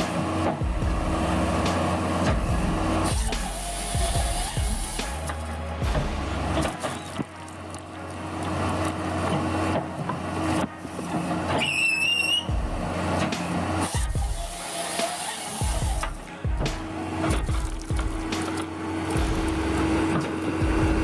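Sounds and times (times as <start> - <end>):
heavy machinery running: 0.0 - 21.0
wavering high-pitched squeal: 0.0 - 21.0.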